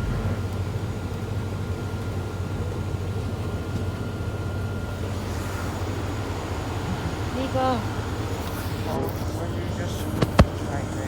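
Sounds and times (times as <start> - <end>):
diesel engine drone: 0.0 - 11.0
road noise: 0.0 - 11.0.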